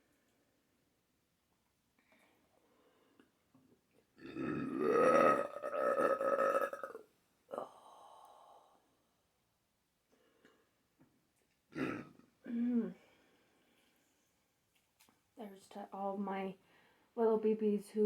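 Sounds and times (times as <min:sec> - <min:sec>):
long loud burp: 0:04.2 - 0:07.7, 0:11.7 - 0:12.6.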